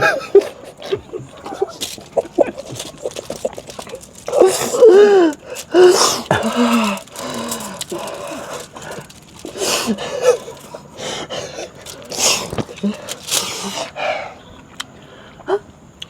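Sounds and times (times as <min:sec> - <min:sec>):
sharp noisy breaths: 0:04.2 - 0:15.5.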